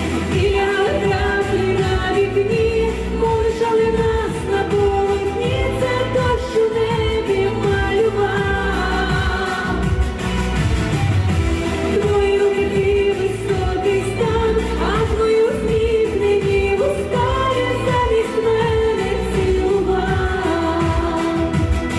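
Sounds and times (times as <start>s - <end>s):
pop backing track with bass: 0.0s - 21.9s.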